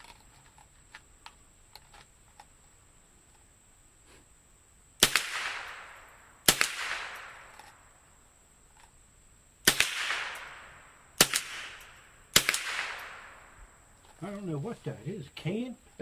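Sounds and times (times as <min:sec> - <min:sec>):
rifle shots with echo: 0:05.0 - 0:08.2, 0:09.6 - 0:13.9.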